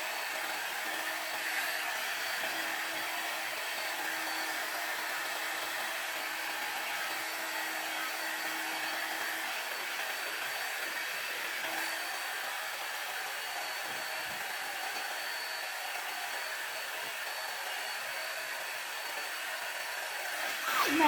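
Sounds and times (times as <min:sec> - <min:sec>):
hair dryer blowing: 0:00.0 - 0:21.0
thin high whine: 0:20.4 - 0:21.0.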